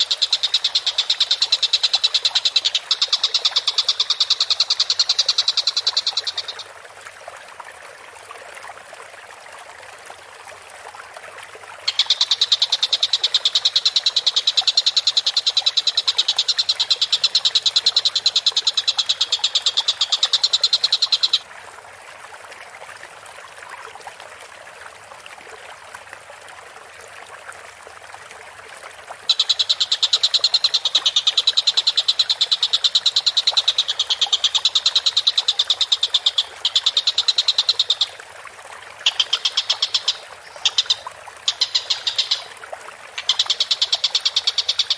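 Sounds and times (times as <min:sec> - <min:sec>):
kingfisher rattling trills: 0:00.0 - 0:06.6, 0:29.3 - 0:38.2, 0:39.0 - 0:42.5, 0:43.2 - 0:44.9.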